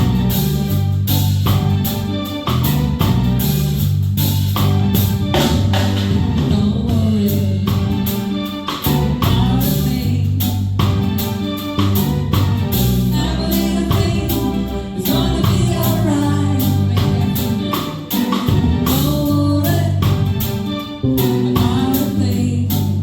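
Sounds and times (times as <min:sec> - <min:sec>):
bass guitar: 0:00.0 - 0:23.0
drum kit beat: 0:00.0 - 0:23.0
keyboard: 0:00.0 - 0:23.0
woman singing: 0:06.4 - 0:07.9, 0:09.2 - 0:10.6, 0:13.1 - 0:18.2, 0:18.8 - 0:20.4, 0:21.1 - 0:23.0.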